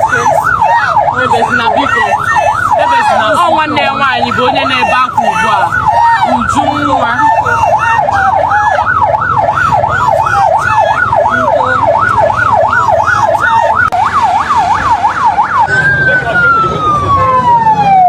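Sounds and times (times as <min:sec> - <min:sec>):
vehicle siren yelping: 0:00.0 - 0:18.0
low rumble: 0:11.8 - 0:18.0.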